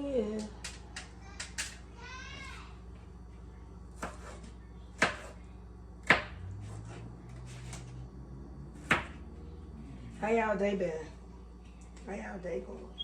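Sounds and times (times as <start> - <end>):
knife chopping on cutting board: 4.0 - 5.4, 6.0 - 7.8, 8.8 - 9.2.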